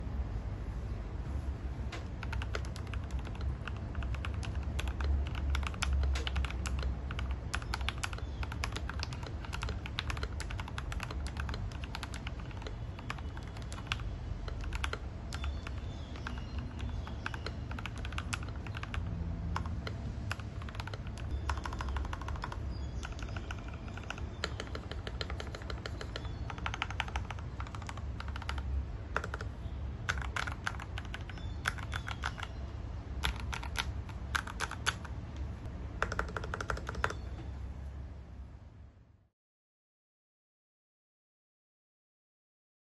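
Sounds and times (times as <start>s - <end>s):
mechanical keyboard typing: 2.0s - 32.6s, 33.2s - 35.2s, 36.0s - 37.3s.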